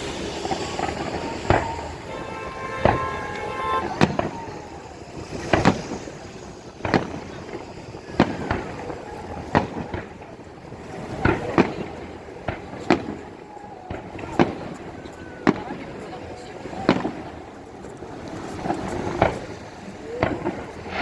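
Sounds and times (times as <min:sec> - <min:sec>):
firework shells bursting: 0:00.0 - 0:13.2, 0:16.9 - 0:21.0.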